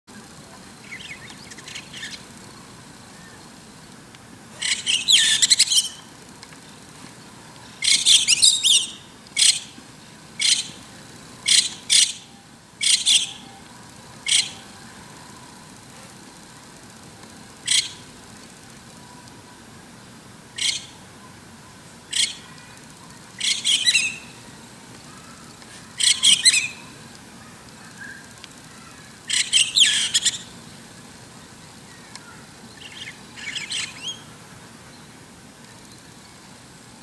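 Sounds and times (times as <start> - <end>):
starling singing squeaky notes: 4.6 - 6.1, 7.8 - 9.7, 11.4 - 13.6, 14.2 - 14.8, 22.1 - 30.5.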